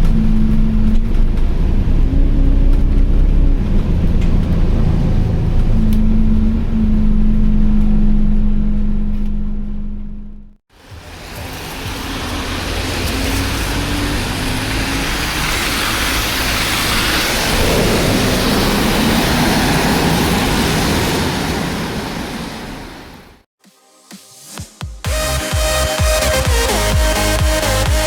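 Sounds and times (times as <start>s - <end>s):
bus accelerating with rising whine: 0.0s - 23.5s.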